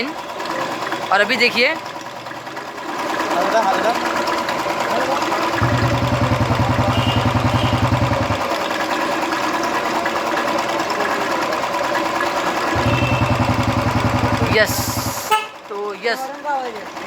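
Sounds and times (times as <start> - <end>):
motorcycle engine idling: 5.6 - 8.8, 12.7 - 15.7.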